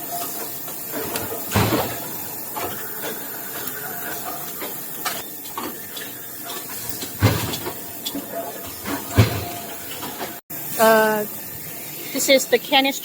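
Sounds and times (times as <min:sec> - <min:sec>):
machinery clatter and hiss: 0:00.0 - 0:13.0.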